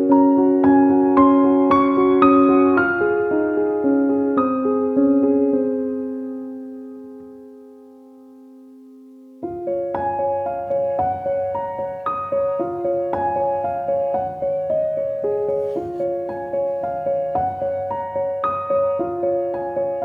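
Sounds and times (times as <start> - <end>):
gentle piano music: 0.0 - 20.0.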